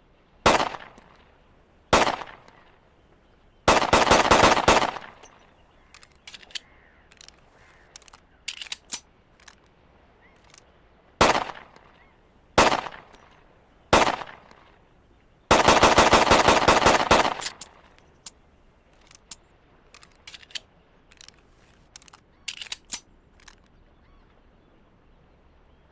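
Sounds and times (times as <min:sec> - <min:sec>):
pistol shots: 0:00.5 - 0:01.0, 0:01.9 - 0:02.5, 0:03.7 - 0:05.2, 0:11.2 - 0:11.8, 0:12.6 - 0:13.1, 0:13.9 - 0:14.6, 0:15.5 - 0:17.8
light metallic clicks: 0:04.9 - 0:09.7, 0:10.3 - 0:10.7, 0:17.2 - 0:23.8.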